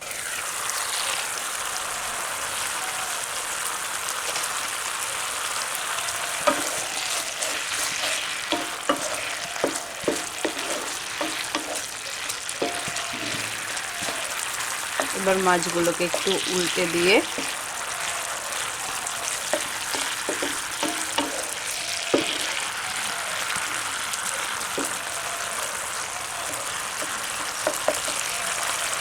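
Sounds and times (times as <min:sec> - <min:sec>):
fish sizzling in a pan: 0:00.0 - 0:29.0
utensil clicking against pan: 0:06.2 - 0:29.0.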